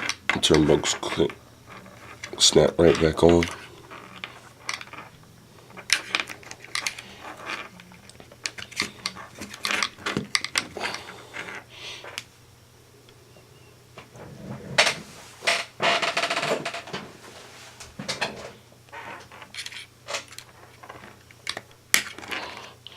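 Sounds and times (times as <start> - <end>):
small plastic and metal parts clicking: 0.0 - 11.6, 19.4 - 22.9.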